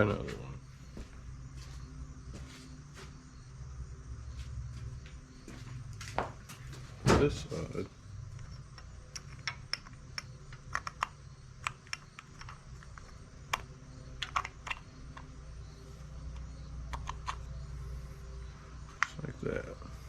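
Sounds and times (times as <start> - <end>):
steady low hum: 0.0 - 20.0
small metallic clicks and taps: 8.3 - 15.3.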